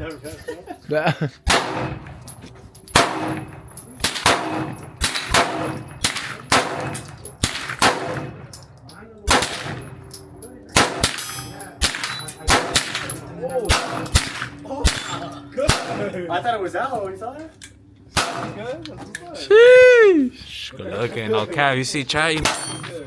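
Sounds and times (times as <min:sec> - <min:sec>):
gunshots: 0:01.4 - 0:02.2, 0:02.9 - 0:08.5, 0:09.3 - 0:10.0, 0:10.7 - 0:16.1, 0:18.1 - 0:18.7, 0:22.4 - 0:22.9
metallic target ringing: 0:01.5 - 0:08.7, 0:09.3 - 0:16.4, 0:22.4 - 0:23.0.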